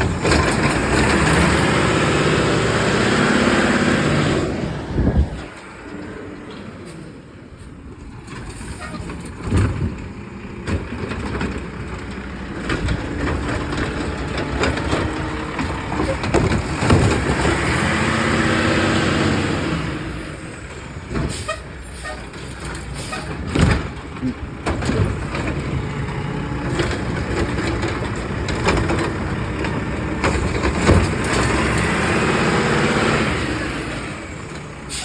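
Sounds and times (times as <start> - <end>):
knocks and clanks: 0.0 - 1.8, 8.1 - 17.9, 21.0 - 32.0
garbage truck engine running: 0.0 - 35.0.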